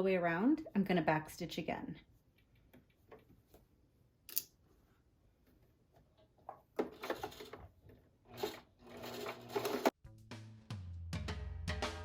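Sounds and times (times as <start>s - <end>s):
sewing machine stitching: 6.8s - 10.0s.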